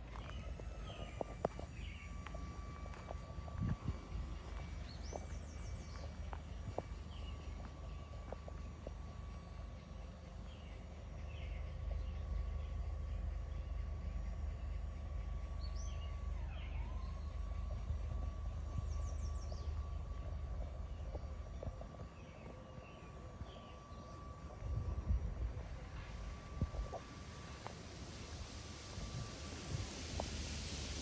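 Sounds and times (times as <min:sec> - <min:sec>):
songbirds chirping: 0:00.0 - 0:29.6
low steady rumble: 0:00.0 - 0:31.0
light footsteps: 0:00.1 - 0:09.0.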